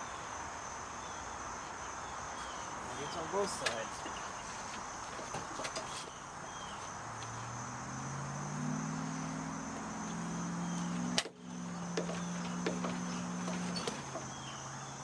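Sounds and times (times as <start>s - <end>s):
crickets trilling: 0.0s - 15.0s
low hum shifting pitch: 7.4s - 13.5s.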